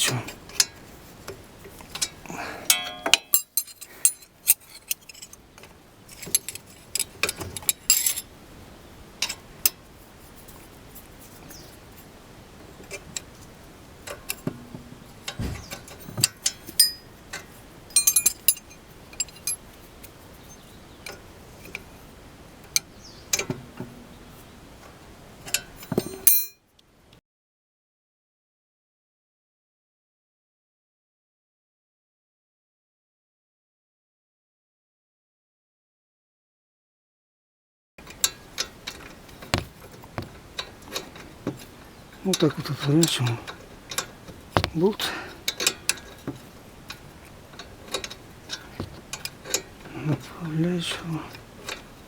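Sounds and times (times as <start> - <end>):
spanners clinking on metal: 2.7 - 5.4, 6.1 - 8.3, 15.9 - 17.1, 17.9 - 19.6, 26.0 - 26.6, 39.5 - 40.4, 44.0 - 46.0.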